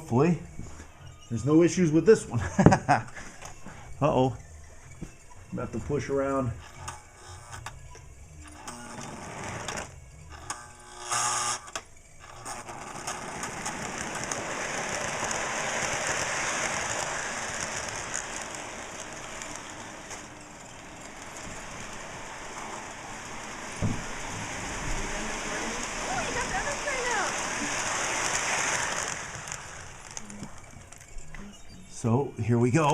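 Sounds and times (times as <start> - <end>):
model train motor whirring: 6.6 - 32.1.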